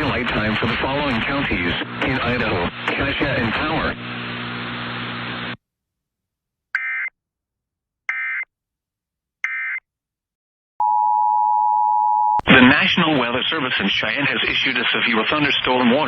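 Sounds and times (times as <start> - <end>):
background hiss and hum: 0.0 - 5.6.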